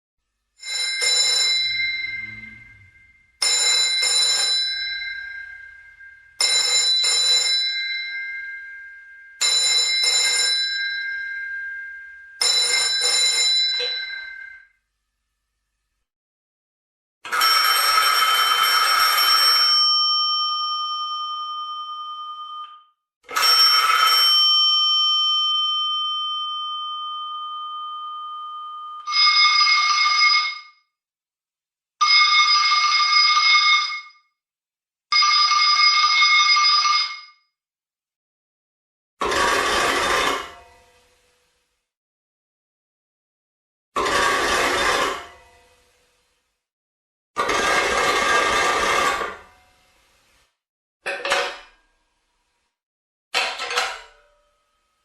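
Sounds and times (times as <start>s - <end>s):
mechanical telephone bell ringing: 0.6s - 14.7s, 17.3s - 30.8s, 32.1s - 34.2s, 35.2s - 37.4s
differently pitched bell ringing: 0.6s - 14.8s, 19.7s - 29.4s.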